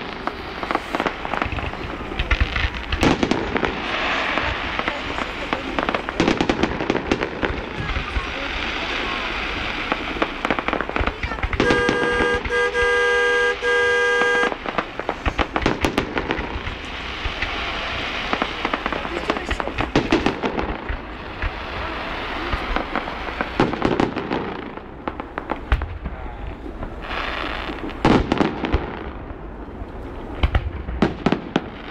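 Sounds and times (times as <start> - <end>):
firework bangs: 0.0 - 31.9
fireworks crackling and popping: 0.0 - 31.9
horn blasts: 11.6 - 14.6.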